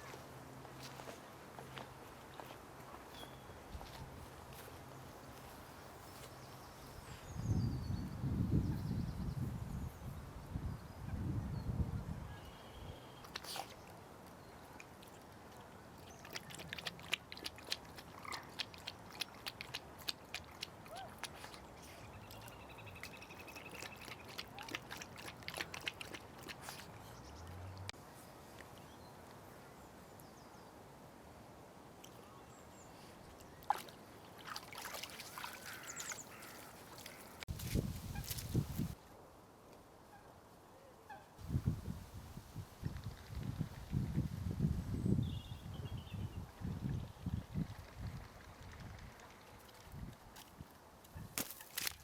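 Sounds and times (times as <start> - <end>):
footsteps on path: 0.0 - 6.3
ducks and waterbirds calling: 12.4 - 27.9, 32.9 - 39.0.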